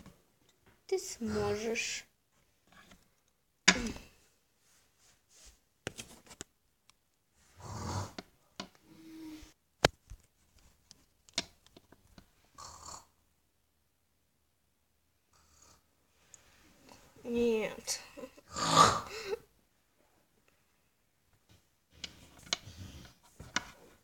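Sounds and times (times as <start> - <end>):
person snoring: 7.6 - 8.2, 18.4 - 19.4.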